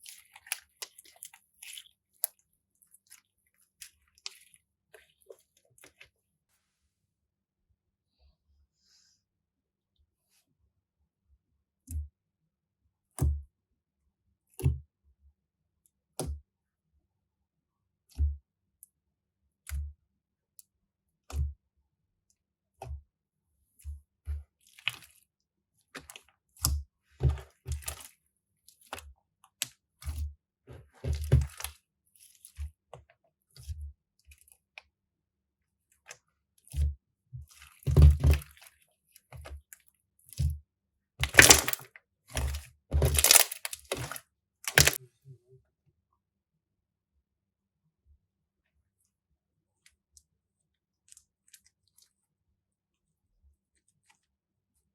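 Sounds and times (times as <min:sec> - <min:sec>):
crunchy slime squeezed by hand: 0:41.2 - 0:41.8, 0:42.4 - 0:45.0.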